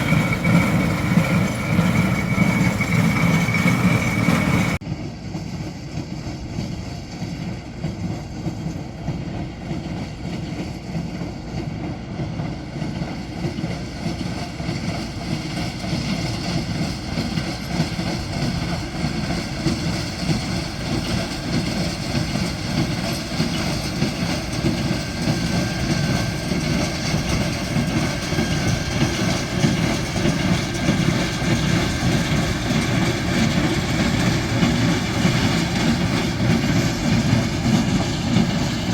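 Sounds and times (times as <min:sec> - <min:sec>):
tractor engine drone: 0:00.0 - 0:05.3, 0:13.8 - 0:38.9.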